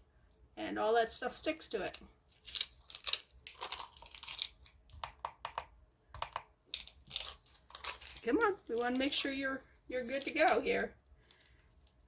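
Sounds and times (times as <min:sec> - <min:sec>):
tape crinkling and crackling: 0:01.8 - 0:05.2, 0:06.7 - 0:12.0.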